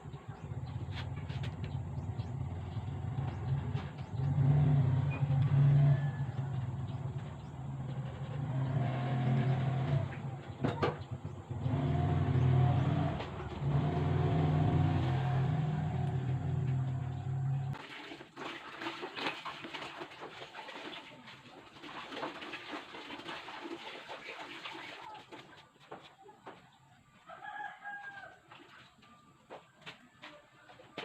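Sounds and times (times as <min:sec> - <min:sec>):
motorcycle engine revving: 0:00.0 - 0:17.8.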